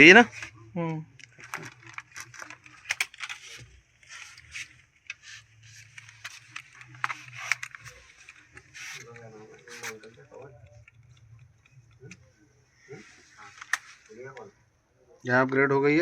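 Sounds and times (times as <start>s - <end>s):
objects being handled: 0.0s - 14.8s.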